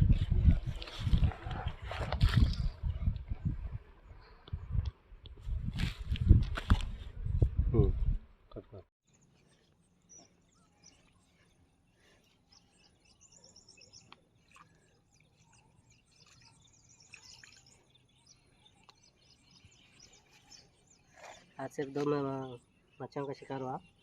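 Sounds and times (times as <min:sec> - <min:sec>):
faint birds chirping: 0:08.5 - 0:24.0.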